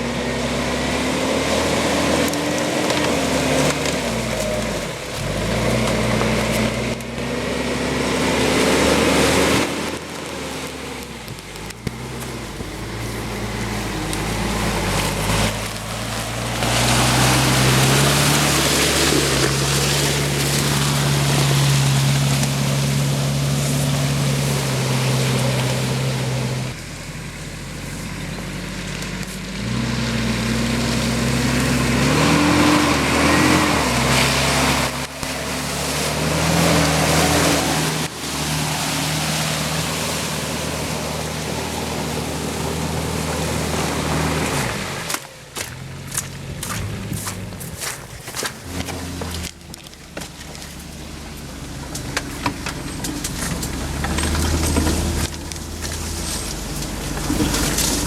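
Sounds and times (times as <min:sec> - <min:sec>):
splashing through mud and water: 0:00.0 - 0:58.0
suv engine revving under load: 0:00.0 - 0:58.0
tyre noise: 0:42.6 - 0:58.0.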